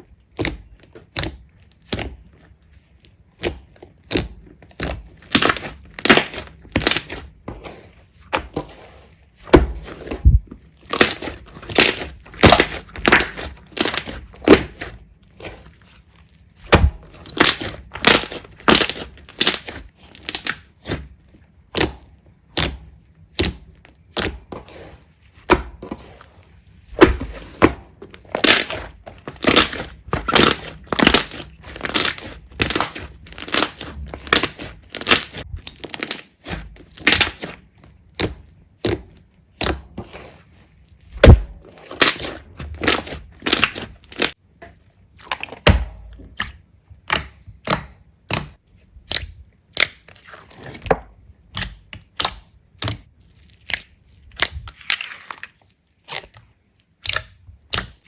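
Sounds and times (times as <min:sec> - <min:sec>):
crunchy slime squished: 0:00.0 - 0:58.0.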